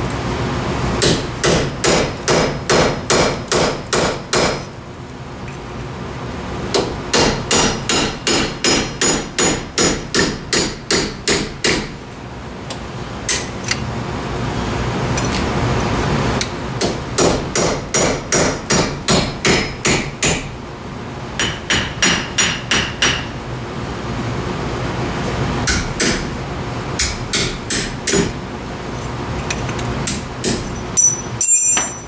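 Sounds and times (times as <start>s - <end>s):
hammer striking steel: 1.0s - 4.7s, 6.8s - 11.9s, 16.8s - 20.5s, 21.4s - 23.3s, 25.7s - 26.3s, 27.0s - 28.4s, 30.1s - 32.0s.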